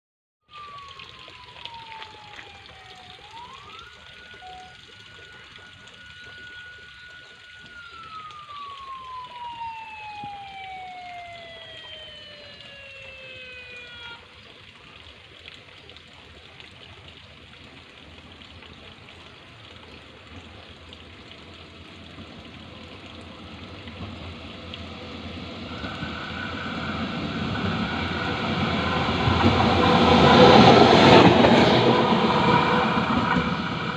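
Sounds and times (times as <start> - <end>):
steady high tone: 0.5 - 14.3, 25.6 - 33.9
approaching train noise: 0.5 - 14.4, 20.3 - 33.9
train siren whistle: 0.5 - 14.5, 22.7 - 33.9.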